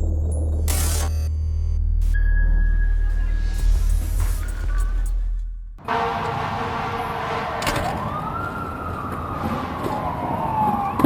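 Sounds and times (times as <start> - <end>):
low electronic drone: 0.0 - 7.7.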